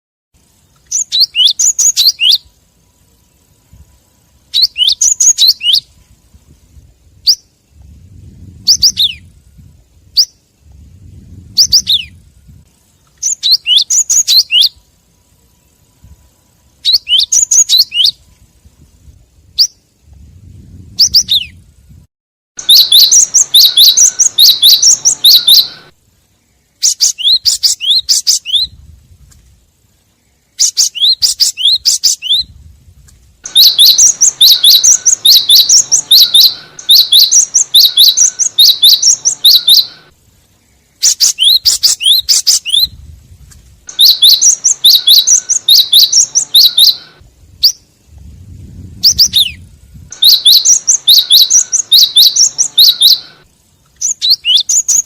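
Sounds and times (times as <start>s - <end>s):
bird chattering chirps: 0.8s - 2.5s, 4.5s - 5.9s, 11.6s - 12.1s, 13.2s - 14.8s, 16.8s - 18.2s, 22.6s - 25.9s, 26.8s - 28.7s, 30.5s - 32.5s, 33.4s - 40.1s, 40.8s - 42.9s, 43.9s - 47.9s, 49.0s - 53.4s, 54.0s - 55.0s.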